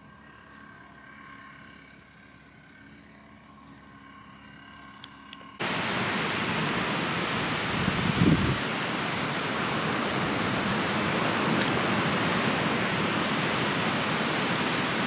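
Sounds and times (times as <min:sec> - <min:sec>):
faint steady hum: 0:05.6 - 0:15.0
loud even rushing noise: 0:05.6 - 0:15.0.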